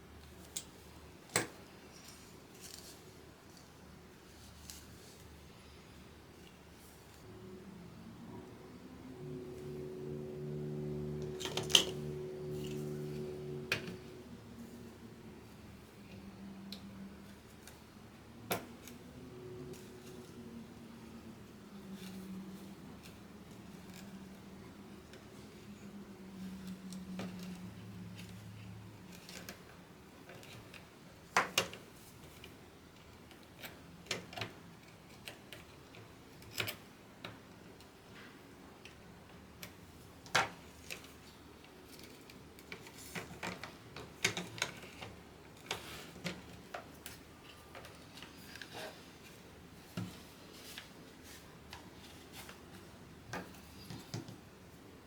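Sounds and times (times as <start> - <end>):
low hum: 7.3 - 16.1.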